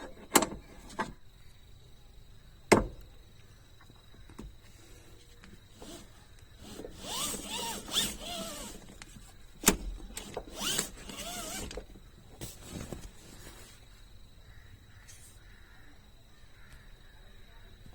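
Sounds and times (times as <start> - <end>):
seat belt retractor whirring: 5.7 - 13.5.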